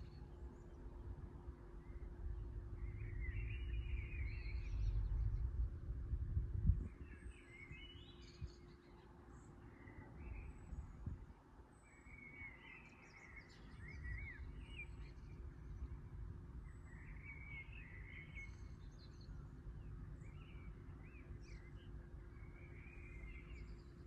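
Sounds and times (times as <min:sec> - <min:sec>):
faint steady hum: 0:00.0 - 0:24.0
low background rumble: 0:00.0 - 0:24.0
small birds chirping: 0:06.8 - 0:24.0.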